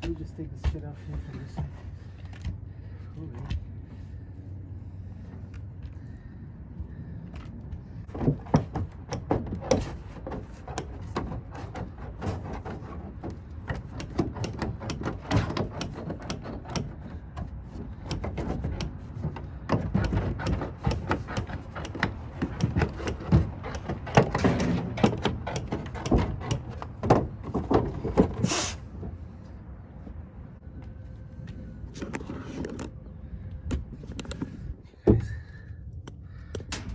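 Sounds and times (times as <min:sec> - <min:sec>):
steady low hum: 0:00.0 - 0:36.9
hand tools knocking and scraping: 0:08.1 - 0:29.2.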